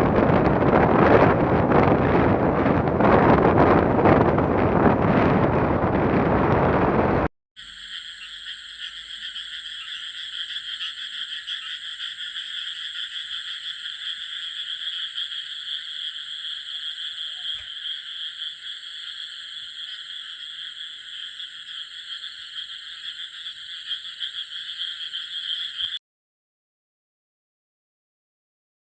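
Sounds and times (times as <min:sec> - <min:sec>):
wind buffeting microphone: 0:00.0 - 0:07.3
chorus of frogs calling: 0:07.6 - 0:26.0.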